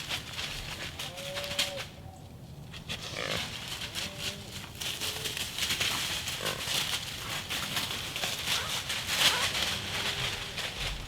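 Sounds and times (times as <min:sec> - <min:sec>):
dry leaves rustling: 0:00.0 - 0:02.0, 0:03.0 - 0:11.0
deer vocalising: 0:08.5 - 0:09.7.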